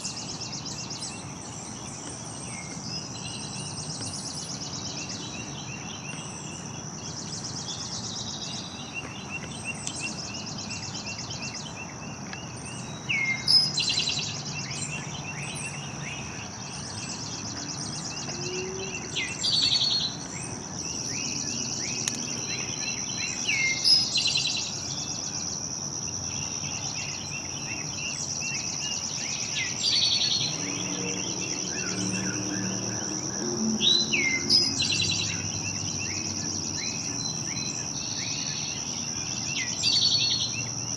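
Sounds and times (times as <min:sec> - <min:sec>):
birds singing and chirping: 0:00.0 - 0:40.9
high-pitched insect drone: 0:17.1 - 0:20.3, 0:21.0 - 0:40.9.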